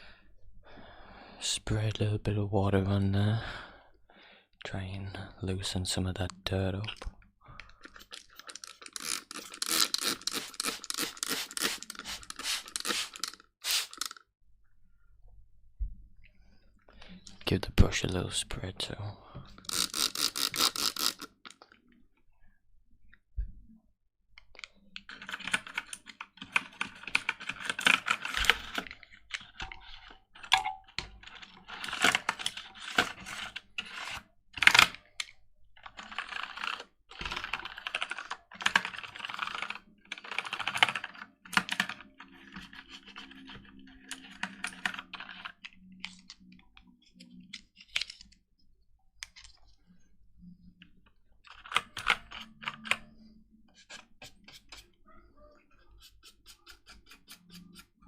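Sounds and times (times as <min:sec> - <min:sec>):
brush scrubbing keyboard keys: 0:08.5 - 0:14.2, 0:53.9 - 0:54.9, 0:55.9 - 0:58.0.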